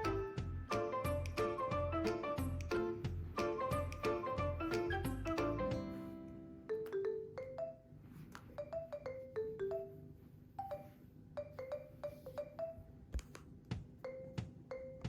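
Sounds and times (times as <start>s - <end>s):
light mallet melody: 0.0s - 7.9s, 8.6s - 13.0s
soft low thumps: 1.8s - 3.4s.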